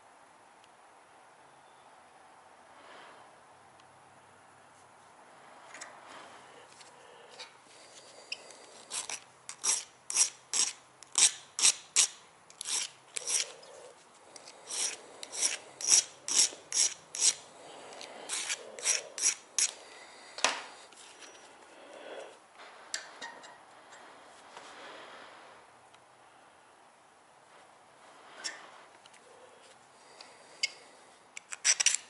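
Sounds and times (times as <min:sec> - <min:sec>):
file scraping metal: 0:08.8 - 0:13.8, 0:14.4 - 0:17.5, 0:18.3 - 0:19.8.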